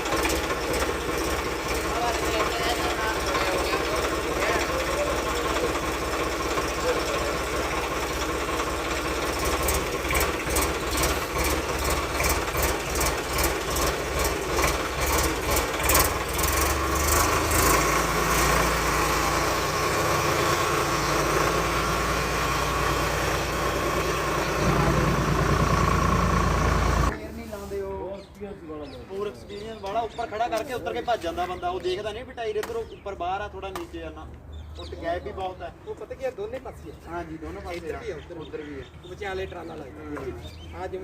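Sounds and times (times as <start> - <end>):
tractor diesel engine running: 0.0 - 27.2.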